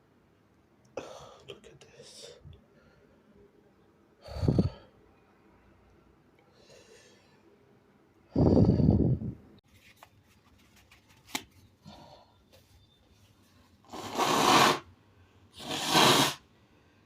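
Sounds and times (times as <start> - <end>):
faint breath: 4.2 - 5.0, 6.4 - 7.6, 11.8 - 12.6.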